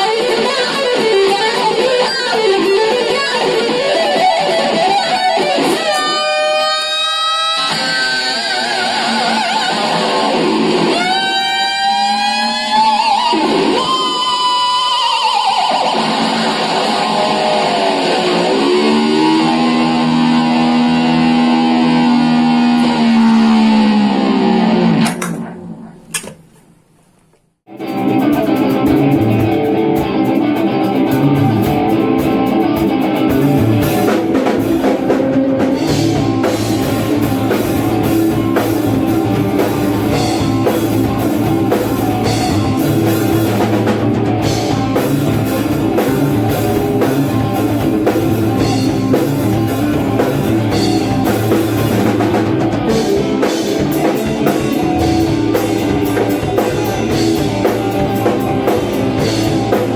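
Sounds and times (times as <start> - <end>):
electric guitar with effects: 0.0 - 26.4, 27.7 - 59.9
drums keeping time: 27.7 - 59.9.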